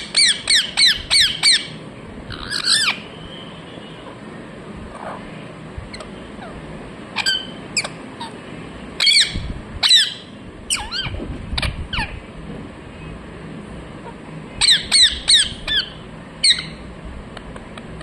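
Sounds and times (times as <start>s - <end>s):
parrot chirps and squawks: 0.0s - 3.1s, 5.9s - 8.4s, 9.0s - 12.2s, 14.0s - 16.9s.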